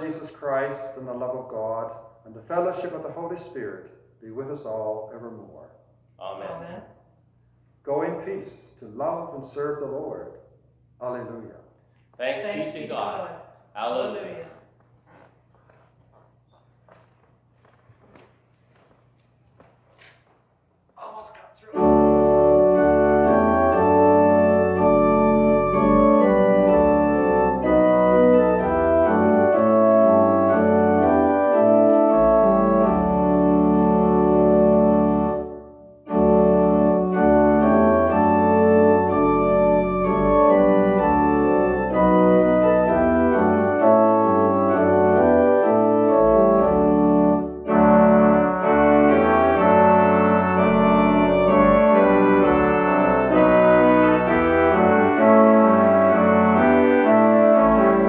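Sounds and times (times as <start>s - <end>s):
organ playing sustained chords: 21.7s - 58.0s.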